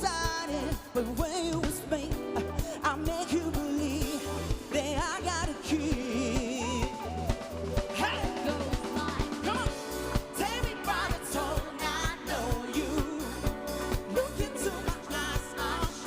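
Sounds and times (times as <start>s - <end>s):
person singing: 0.0s - 16.0s.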